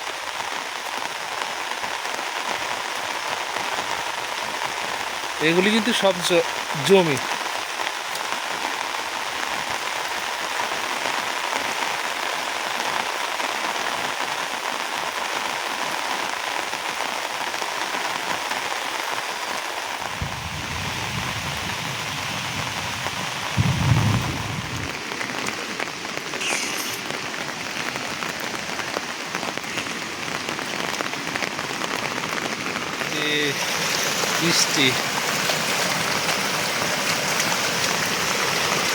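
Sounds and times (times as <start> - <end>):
heavy rain falling: 0.0 - 38.9
low rumble: 23.6 - 25.0.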